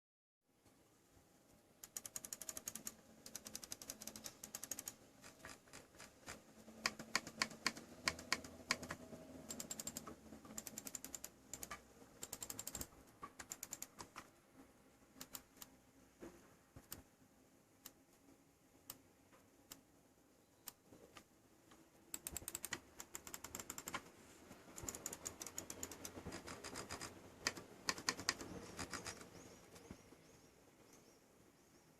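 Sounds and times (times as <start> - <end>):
mouse buttons clicking: 1.8 - 14.3, 15.1 - 15.7, 16.8 - 17.1, 20.6 - 24.1, 24.7 - 30.0.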